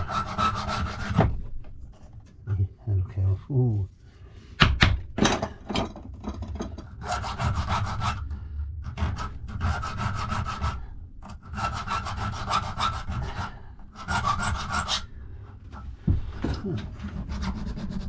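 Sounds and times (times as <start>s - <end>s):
hand file rasping on metal key: 0.0s - 1.2s, 6.8s - 8.3s, 8.9s - 15.1s.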